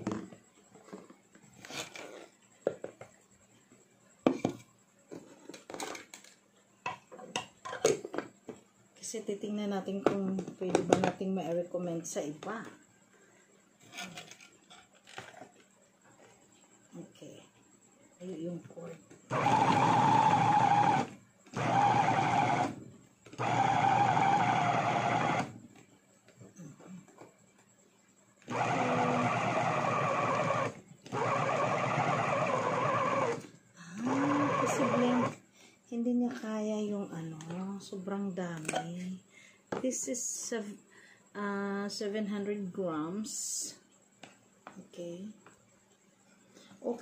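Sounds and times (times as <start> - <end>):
kitchen things knocking and scraping: 6.9 - 8.4
meat mincer motor whirring: 19.3 - 25.6, 28.4 - 35.4.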